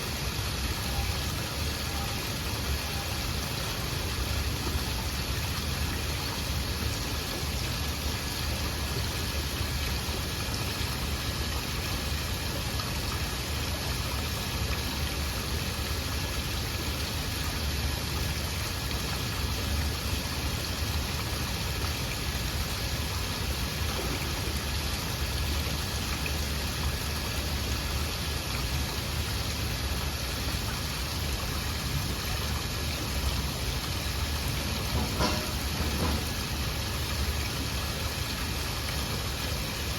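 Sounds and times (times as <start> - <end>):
waterfall rushing: 30.6 - 39.9.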